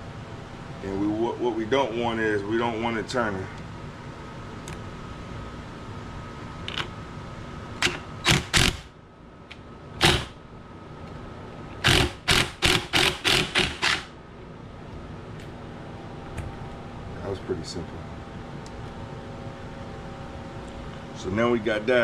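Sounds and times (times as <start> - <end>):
socket ratchet clicking: 11.8 - 14.1.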